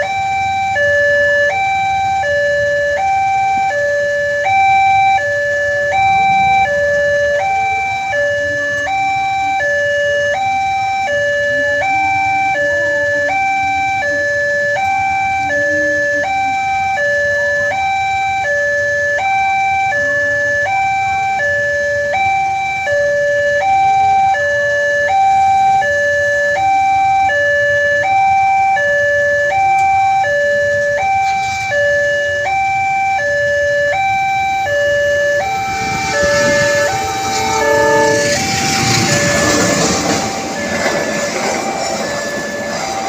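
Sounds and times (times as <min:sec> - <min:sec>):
two-tone crossing alarm: 0:00.0 - 0:43.0
approaching train rushing: 0:05.0 - 0:08.4, 0:34.4 - 0:43.0.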